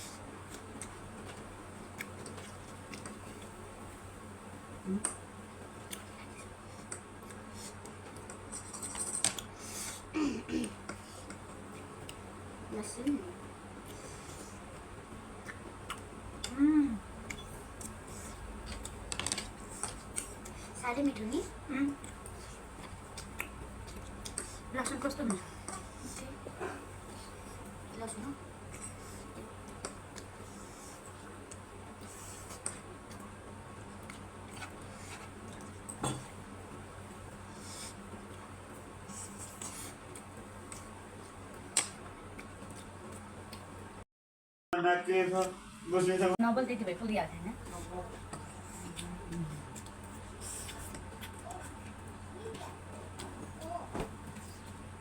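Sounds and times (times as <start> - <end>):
eating clicks and smacks: 0.4 - 3.6, 5.0 - 9.6, 10.6 - 12.4, 15.4 - 16.6, 17.2 - 20.7, 21.9 - 26.6, 28.7 - 30.4, 31.3 - 33.3, 33.9 - 36.4, 39.3 - 43.8, 48.2 - 54.8.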